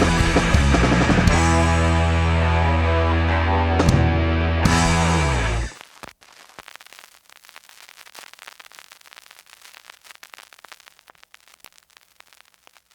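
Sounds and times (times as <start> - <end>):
vinyl record hiss with crackles: 4.4 - 12.9.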